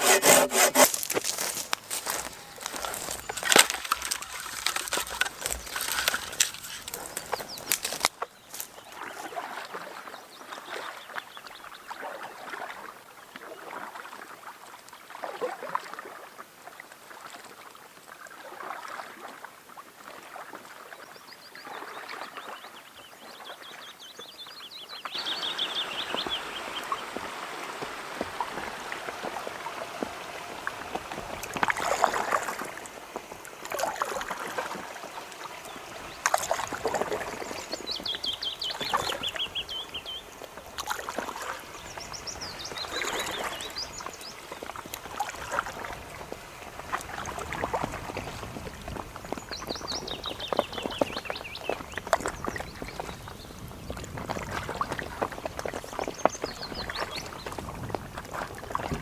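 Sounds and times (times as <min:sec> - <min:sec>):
paddle splashing water: 0:00.0 - 0:59.0
bird singing high trill: 0:24.5 - 0:27.0.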